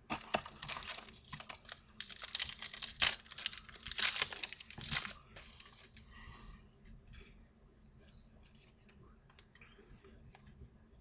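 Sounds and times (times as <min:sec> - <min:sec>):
wrapper crinkling and tearing: 0:00.2 - 0:06.0.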